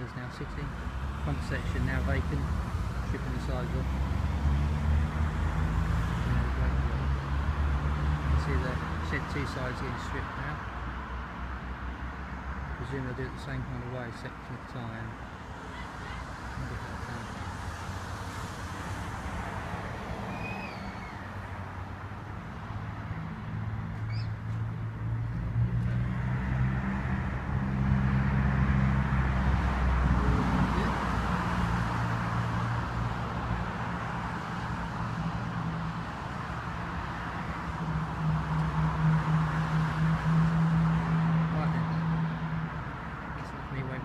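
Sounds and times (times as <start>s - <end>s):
vehicle engine humming: 0.0s - 44.0s
bird chirps: 20.3s - 21.2s, 24.0s - 24.5s.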